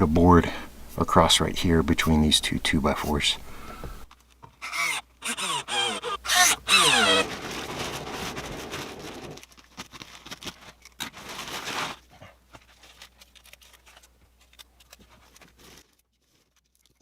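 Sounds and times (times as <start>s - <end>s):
rustling: 0.0s - 17.0s.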